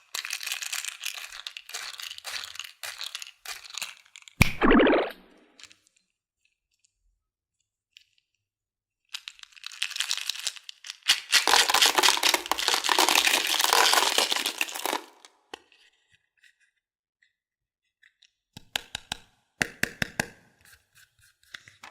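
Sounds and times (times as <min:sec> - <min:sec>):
plastic packaging crinkling and tearing: 0:00.0 - 0:04.4, 0:09.2 - 0:15.3.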